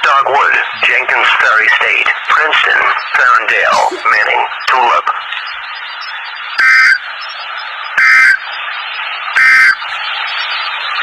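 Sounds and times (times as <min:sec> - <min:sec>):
radio hiss: 0:00.0 - 0:11.0
alert data tone bursts: 0:00.9 - 0:08.5.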